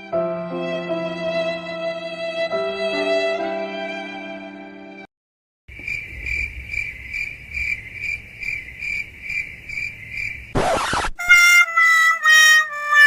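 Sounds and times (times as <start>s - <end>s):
cricket chirping: 5.7s - 10.6s.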